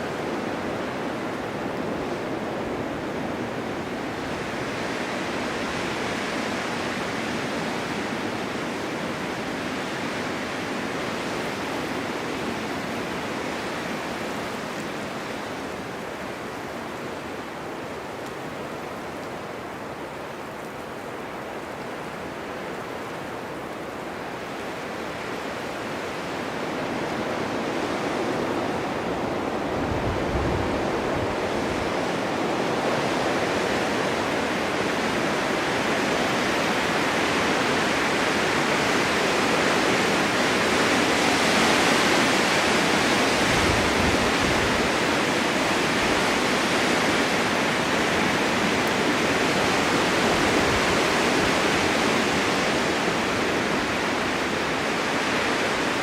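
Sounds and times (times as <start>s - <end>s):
blizzard wind rushing: 21.6s - 56.0s
low gusty rumbles: 43.3s - 51.8s.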